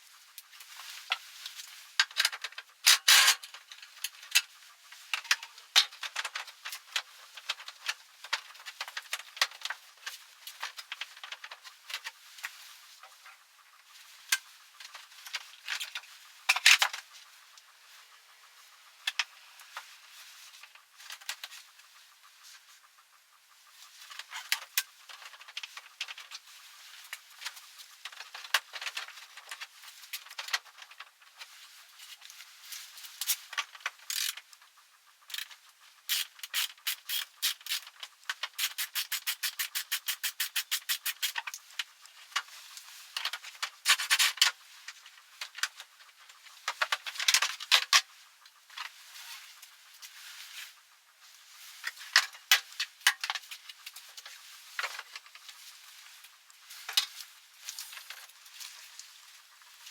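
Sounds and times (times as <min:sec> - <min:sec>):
fast ratcheting clicks: 0:35.3 - 0:41.5
hand tools clicking on metal: 0:35.3 - 0:41.9.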